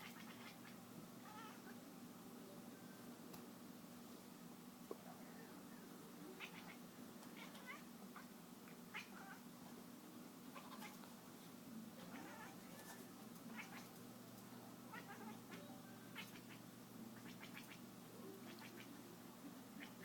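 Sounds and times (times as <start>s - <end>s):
cat making faint calls: 0.0s - 1.8s, 6.4s - 6.8s, 7.4s - 8.3s, 8.9s - 9.4s, 10.5s - 11.0s, 12.0s - 12.7s, 13.5s - 13.9s, 14.9s - 16.6s, 17.2s - 19.0s.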